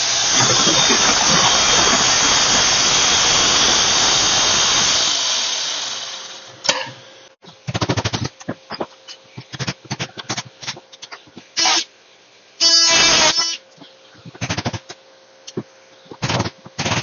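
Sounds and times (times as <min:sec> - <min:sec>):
floor sanding machine running: 0:00.0 - 0:06.5.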